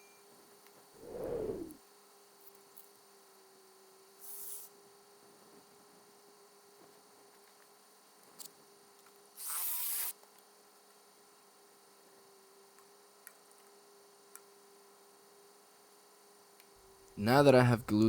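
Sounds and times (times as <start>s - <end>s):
short hiss: 1.0s - 1.8s.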